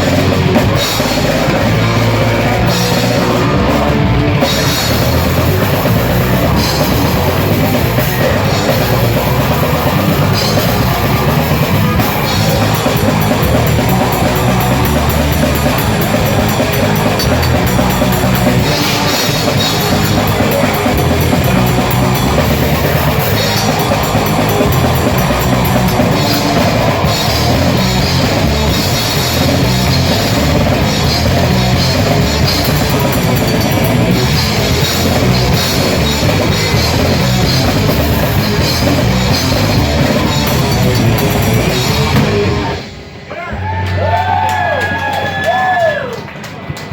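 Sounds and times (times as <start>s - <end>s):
fast drumming with cymbals: 0.0s - 42.9s
distorted guitars and bass: 0.0s - 45.8s.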